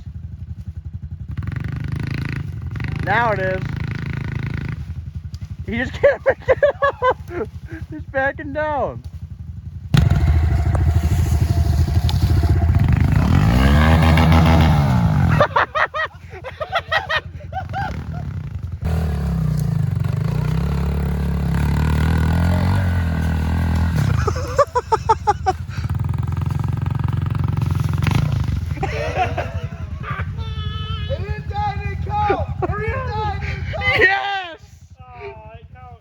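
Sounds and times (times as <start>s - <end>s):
pit bike engine labouring: 0.0s - 34.4s
people shouting: 30.0s - 34.7s.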